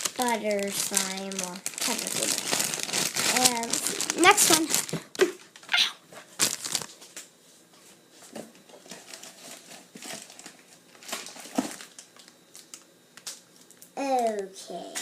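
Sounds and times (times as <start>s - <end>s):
plastic bag crinkling: 0.0s - 5.6s, 6.3s - 7.0s, 8.9s - 14.4s.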